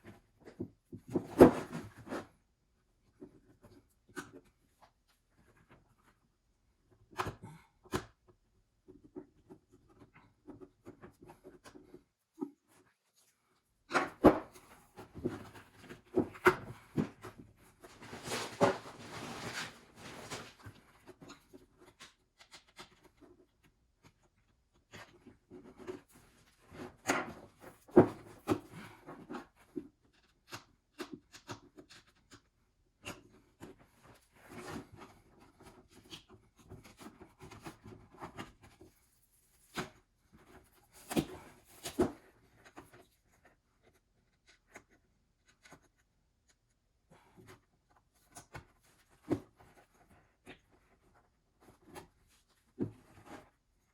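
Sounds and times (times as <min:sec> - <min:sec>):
scraping and rustling of mat: 0:14.3 - 0:21.2.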